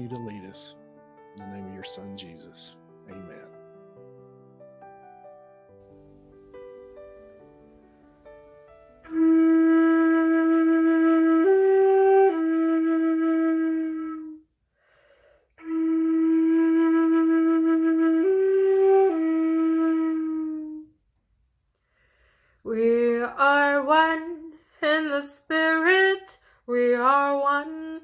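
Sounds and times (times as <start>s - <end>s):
flute playing slow phrase: 9.0s - 14.4s, 15.6s - 20.9s.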